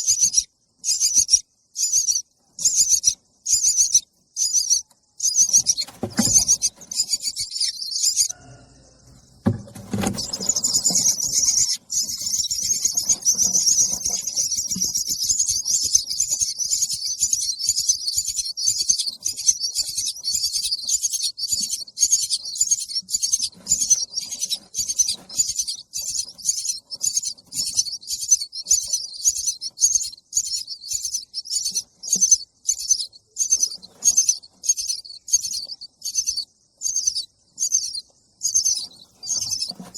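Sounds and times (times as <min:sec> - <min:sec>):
baby birds chirping: 0:00.0 - 0:39.9
brief knock: 0:09.1 - 0:10.5.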